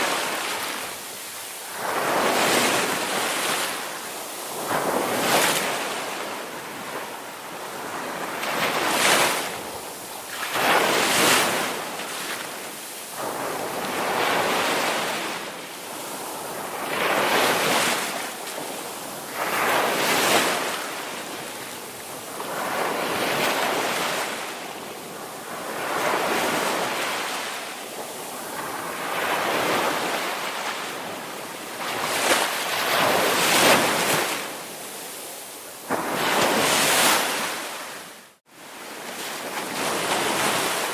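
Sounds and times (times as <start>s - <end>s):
ocean waves breaking on beach: 0.0s - 40.9s.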